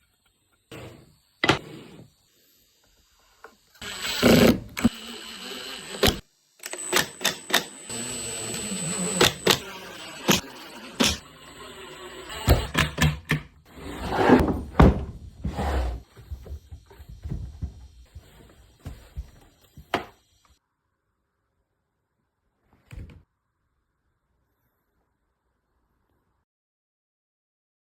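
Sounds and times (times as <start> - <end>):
wooden boards and tools knocking: 12.5 - 17.9.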